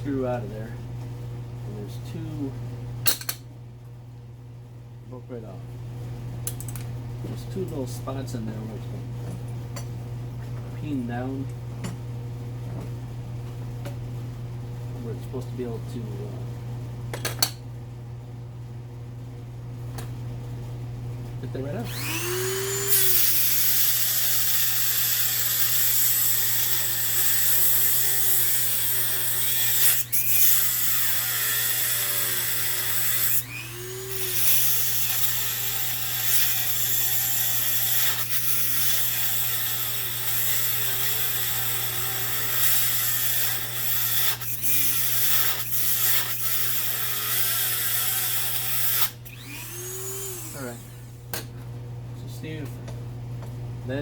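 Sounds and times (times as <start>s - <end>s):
power tool cutting metal: 21.7s - 51.1s.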